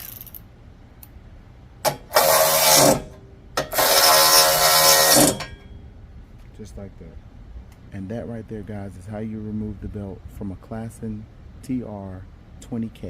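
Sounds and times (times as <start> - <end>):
impact driver buzzing rattle: 1.9 - 5.6.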